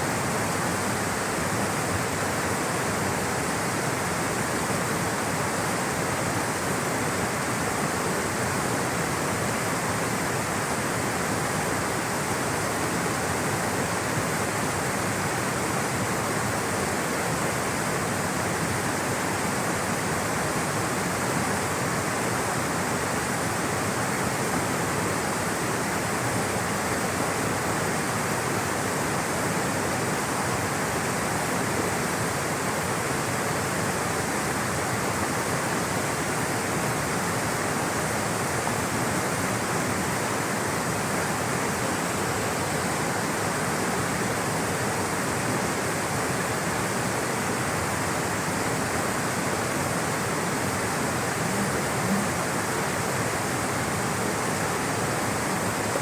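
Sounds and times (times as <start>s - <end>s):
rushing water: 0.0s - 56.0s.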